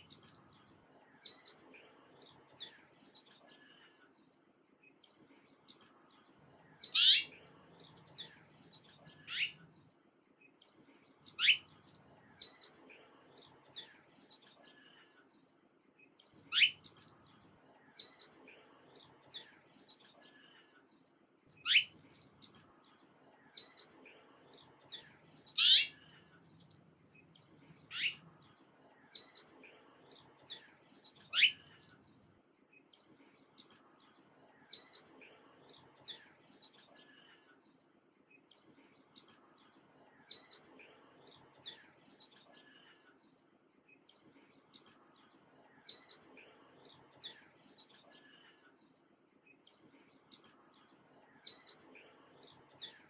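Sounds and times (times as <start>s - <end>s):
faint high bird twitters: 6.7s - 9.7s, 11.3s - 12.8s, 16.3s - 17.1s, 21.6s - 22.6s, 24.6s - 26.2s, 27.9s - 28.4s, 30.2s - 31.9s
loud sharp bird chirps: 6.9s - 7.3s, 9.3s - 9.6s, 21.6s - 22.0s.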